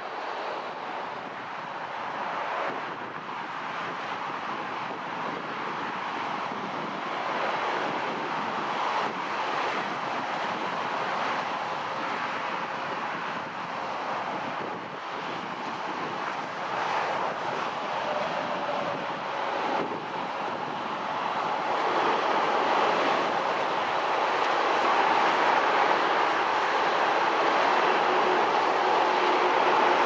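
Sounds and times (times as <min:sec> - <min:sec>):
wind noise on microphone: 0:00.0 - 0:30.0
jet engines roaring: 0:06.4 - 0:30.0.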